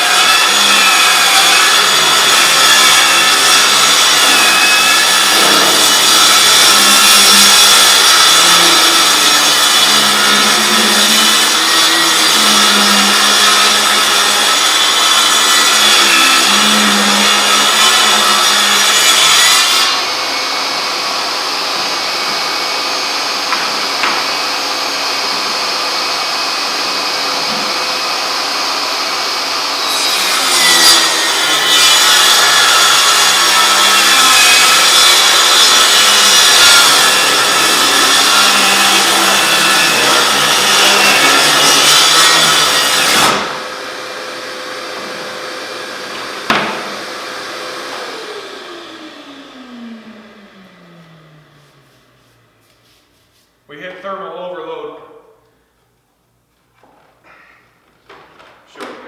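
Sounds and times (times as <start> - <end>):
table saw cutting wood: 0.0 - 52.6.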